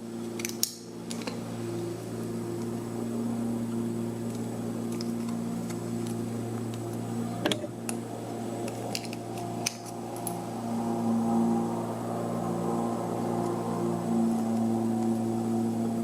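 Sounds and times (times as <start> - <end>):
low hum: 0.0 - 16.0.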